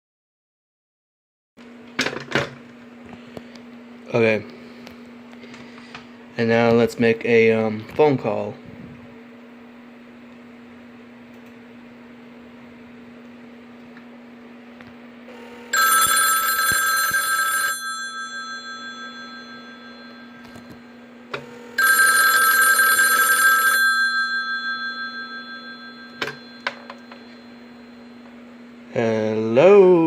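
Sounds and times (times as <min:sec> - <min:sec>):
steady low hum: 0:02.6 - 0:15.8, 0:18.1 - 0:21.8, 0:23.9 - 0:30.0
telephone bell ringing: 0:15.4 - 0:28.2.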